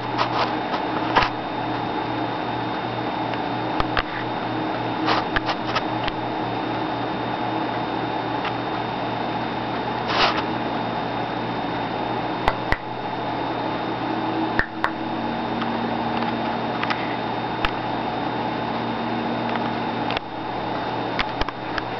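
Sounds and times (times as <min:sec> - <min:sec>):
steady hum: 0:00.0 - 0:21.9
sharp clicks: 0:12.5 - 0:12.9, 0:14.6 - 0:15.0.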